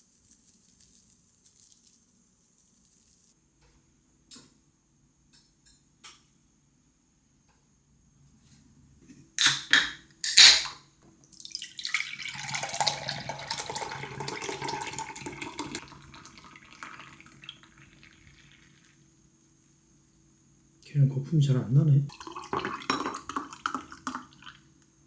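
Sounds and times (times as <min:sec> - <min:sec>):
liquid pouring: 0:11.4 - 0:19.2, 0:22.1 - 0:24.8.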